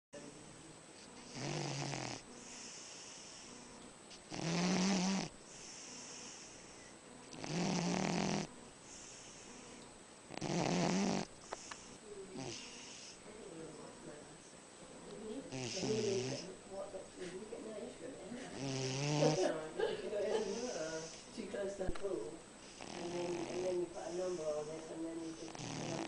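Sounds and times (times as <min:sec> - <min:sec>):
dog snoring: 0:01.2 - 0:13.2, 0:15.5 - 0:16.5, 0:18.4 - 0:19.6, 0:20.4 - 0:21.3, 0:22.6 - 0:26.0.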